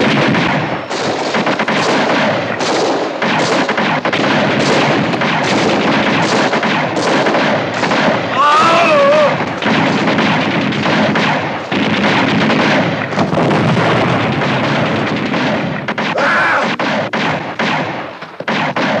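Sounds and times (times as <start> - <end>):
explosions: 0.0 - 19.0
gunfire: 0.0 - 19.0
high-pitched cry: 8.4 - 9.4.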